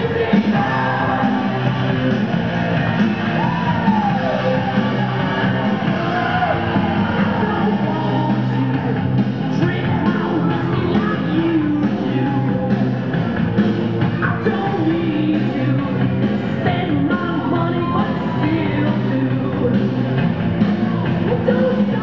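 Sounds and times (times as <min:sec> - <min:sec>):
person singing: 0:00.0 - 0:02.2, 0:06.0 - 0:12.8, 0:14.1 - 0:19.9, 0:20.9 - 0:22.0
loud steady music: 0:00.0 - 0:22.0.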